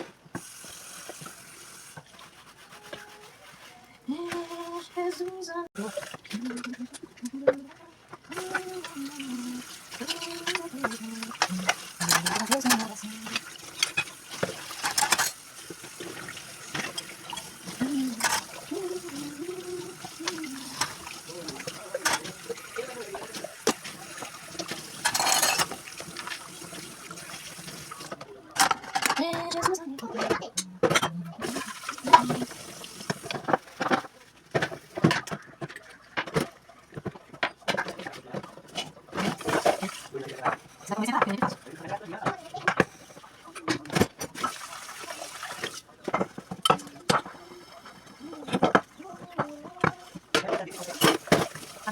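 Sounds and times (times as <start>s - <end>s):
frying sizzle: 0.0s - 3.6s, 8.3s - 28.2s, 31.4s - 35.2s, 42.7s - 48.8s, 49.8s - 51.9s
utensil scraping pan: 2.0s - 5.3s, 9.8s - 34.0s
tap running: 4.1s - 47.4s
kitchenware clicks and knocks: 9.9s - 18.6s, 20.2s - 26.4s, 28.0s - 43.0s, 43.6s - 44.4s, 45.6s - 47.4s, 48.4s - 51.9s.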